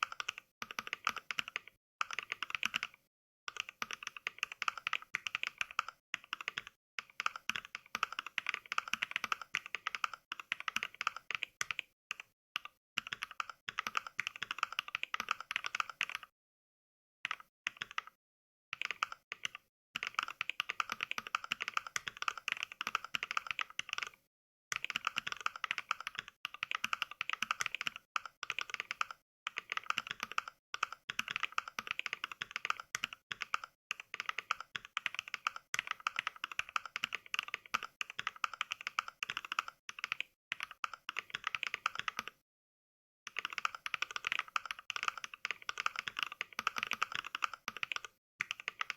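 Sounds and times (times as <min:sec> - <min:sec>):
mechanical keyboard typing: 0:00.0 - 0:16.3, 0:17.3 - 0:18.2, 0:18.8 - 0:42.4, 0:43.3 - 0:48.9.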